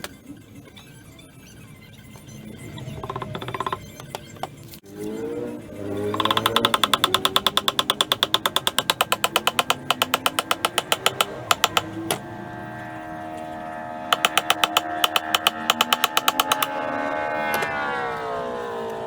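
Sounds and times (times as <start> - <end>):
rapid even clicking: 2.8 - 4.5, 6.1 - 12.2, 14.1 - 16.8
lathe motor hum: 5.8 - 19.0.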